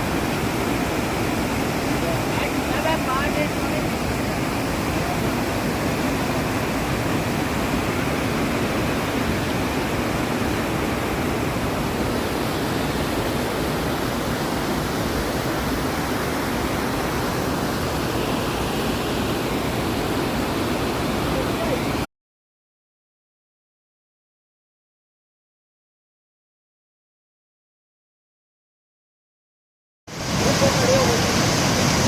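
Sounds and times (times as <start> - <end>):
fast-flowing mountain water: 0.0 - 22.1, 30.1 - 32.0.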